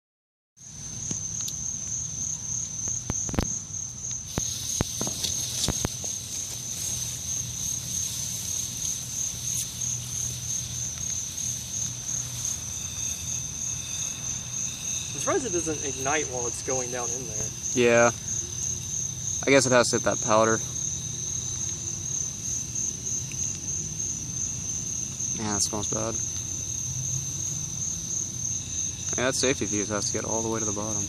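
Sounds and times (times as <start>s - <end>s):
crickets chirping: 0.6s - 31.0s
high hiss: 2.2s - 31.0s.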